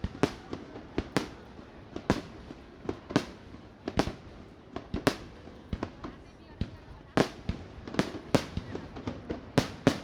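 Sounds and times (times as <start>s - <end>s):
aerial fireworks bursting: 7.2s - 10.0s.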